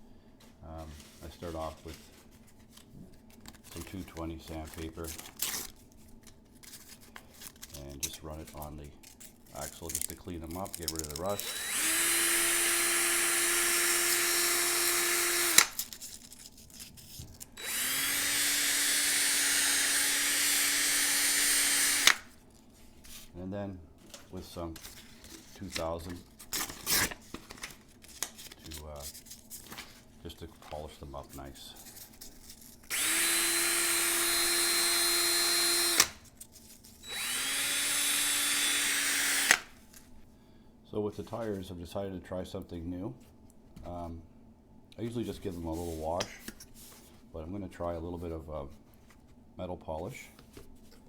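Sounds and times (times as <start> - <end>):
cordless drill motor whine: 11.2 - 15.8, 17.6 - 22.3, 32.9 - 36.2, 37.0 - 39.8.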